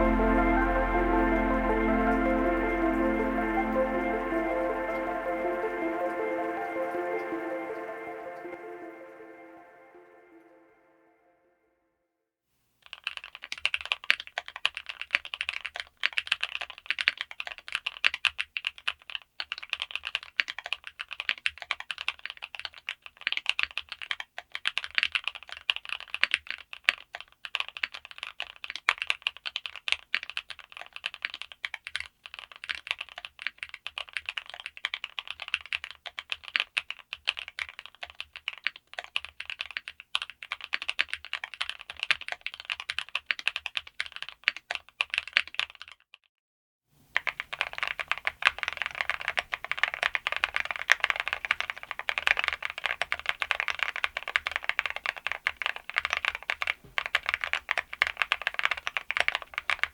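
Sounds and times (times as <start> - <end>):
mechanical keyboard typing: 12.9 - 46.0, 47.1 - 59.9.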